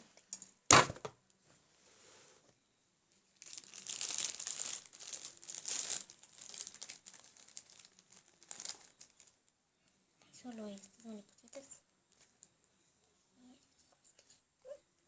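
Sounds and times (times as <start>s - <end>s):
packet crinkling: 3.4s - 9.4s.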